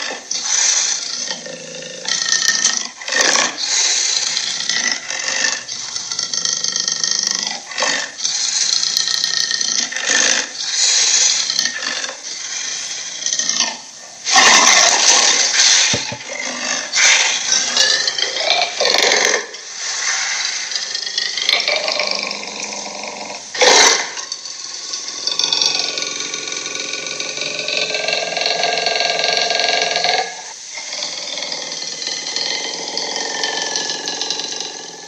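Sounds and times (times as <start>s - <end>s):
cartoon monster growling: 13.4s - 24.4s, 25.0s - 35.0s.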